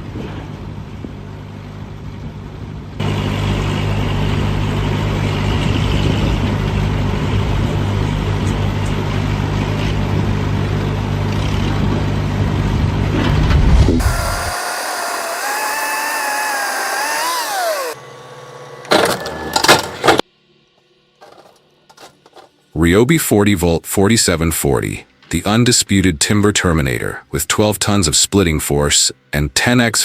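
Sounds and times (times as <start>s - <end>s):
heavy machine engine running: 0.0s - 20.2s.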